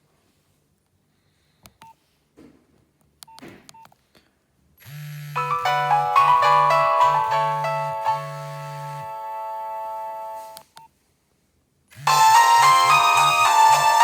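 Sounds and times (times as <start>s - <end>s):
polyphonic ringtone: 5.4s - 10.6s, 12.0s - 14.0s.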